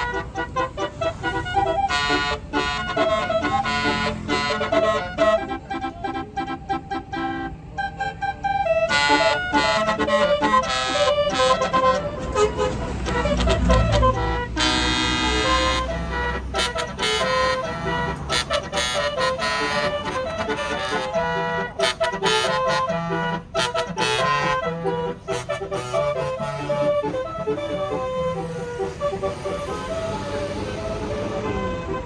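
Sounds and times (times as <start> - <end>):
multi-tone horn melody: 0.0 - 32.0.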